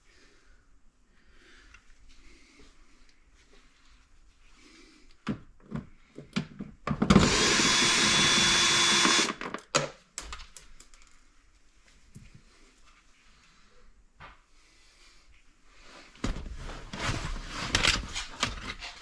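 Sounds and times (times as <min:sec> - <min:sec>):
cordless drill running: 0:07.1 - 0:09.4.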